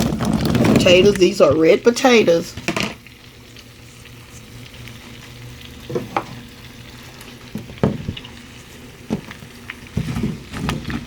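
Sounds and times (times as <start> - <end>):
potatoes sizzling in a skillet: 0.8 - 11.0
knocks against a pan: 7.6 - 8.2.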